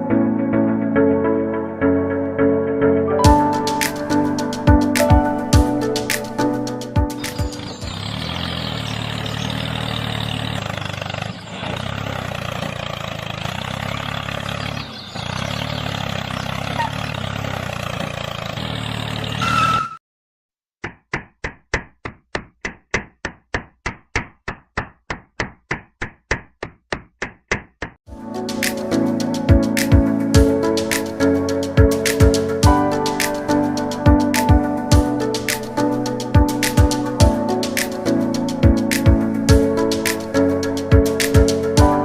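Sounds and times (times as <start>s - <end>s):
sharp knocks: 20.8s - 28.0s.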